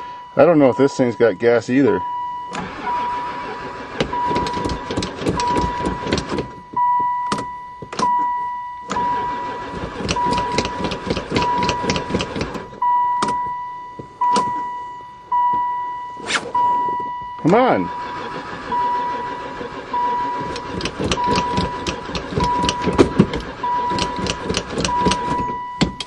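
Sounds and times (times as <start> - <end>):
warning chime beeping: 0.0 - 3.4, 5.4 - 10.8, 11.4 - 24.2, 24.8 - 26.0
starter cranking engine: 2.5 - 6.5, 8.9 - 12.7, 17.5 - 26.0.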